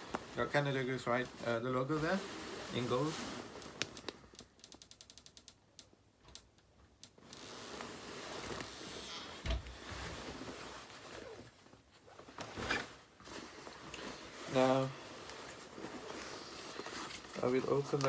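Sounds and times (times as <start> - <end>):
coat fabric rustling: 0.0 - 4.1, 7.2 - 18.0
small clicks: 3.8 - 7.4
single thump: 9.4 - 9.8.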